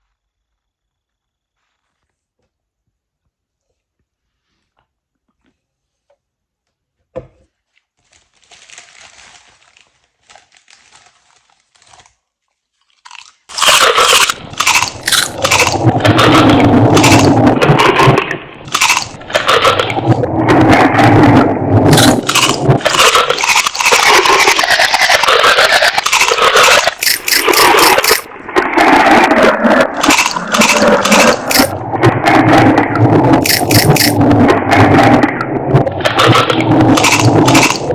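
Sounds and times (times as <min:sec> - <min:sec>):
crunching and scraping dry material: 0:07.6 - 0:16.0.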